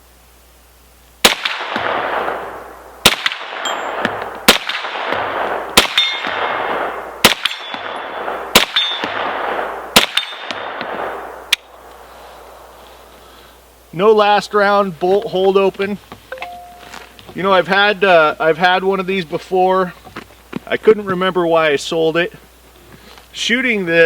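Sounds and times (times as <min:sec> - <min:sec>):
carbine gunshots: 0:01.2 - 0:11.8.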